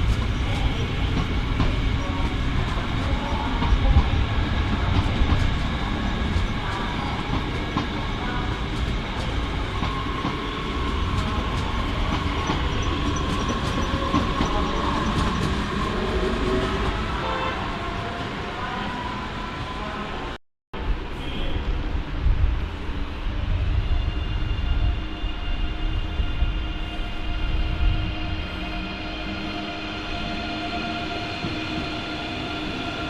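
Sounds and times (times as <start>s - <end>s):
train wheels rumbling on rails: 0.0s - 20.3s.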